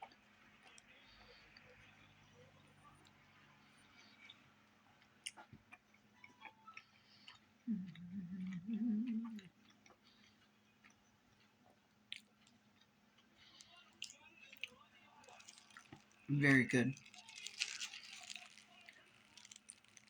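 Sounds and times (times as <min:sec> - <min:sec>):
close-up chewing: 0:00.0 - 0:16.3, 0:16.9 - 0:20.0
person humming mmm: 0:07.7 - 0:09.5.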